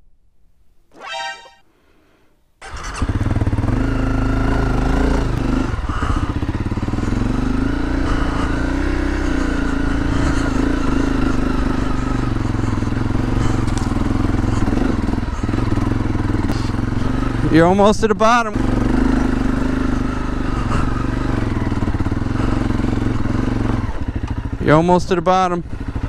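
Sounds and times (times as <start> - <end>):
high-pitched tone: 0.9 - 1.6
dirt bike engine starting: 2.6 - 25.0.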